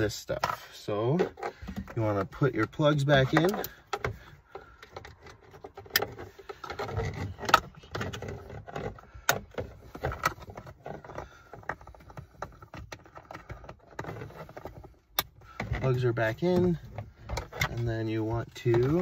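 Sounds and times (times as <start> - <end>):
plastic rubbing and scraping: 0.0 - 19.0.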